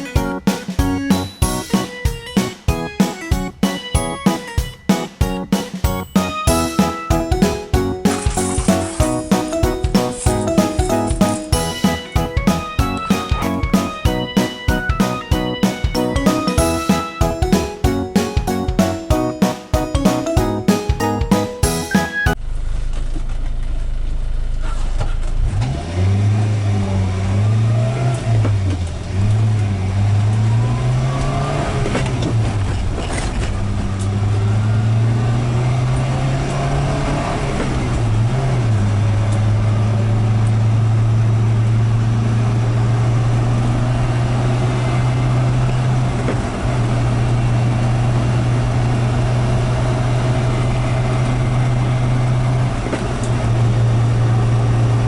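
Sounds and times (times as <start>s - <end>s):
van engine shifting gears: 22.4s - 55.0s.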